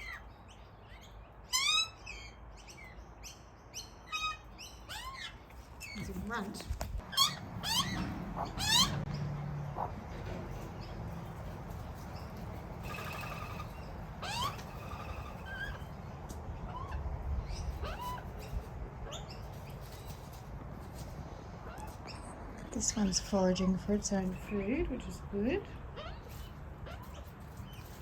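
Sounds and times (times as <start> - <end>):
magpies calling: 0.0 - 20.3, 20.9 - 23.2, 24.1 - 28.0.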